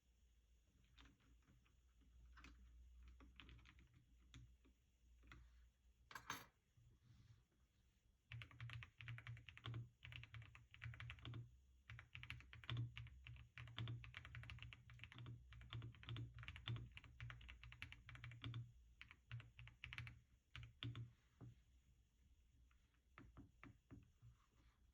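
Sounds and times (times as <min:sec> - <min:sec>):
mechanical keyboard typing: 0:02.4 - 0:04.4, 0:08.3 - 0:21.0.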